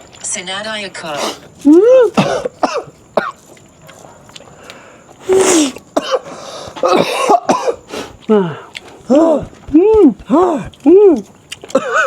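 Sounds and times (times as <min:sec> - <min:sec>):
person coughing: 0:02.2 - 0:03.4, 0:05.5 - 0:07.8, 0:11.7 - 0:12.0.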